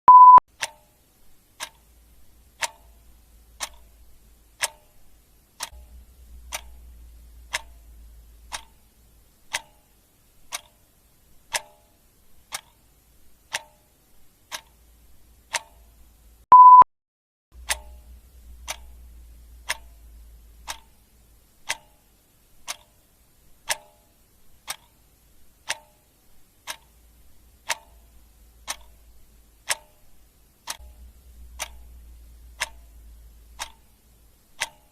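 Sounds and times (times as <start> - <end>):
short beep: 0.0 - 0.4, 16.5 - 16.9
clock ticking: 0.1 - 16.8, 17.6 - 34.9.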